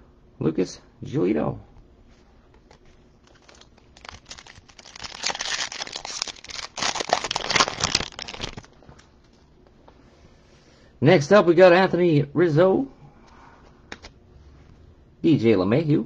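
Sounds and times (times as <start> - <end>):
foil wrapper tearing and crinkling: 3.2 - 9.4.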